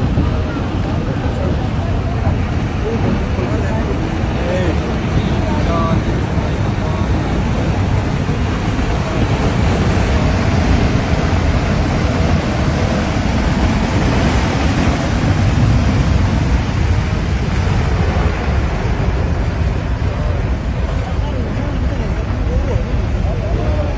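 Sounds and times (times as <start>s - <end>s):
floodwater roaring: 0.0s - 23.9s.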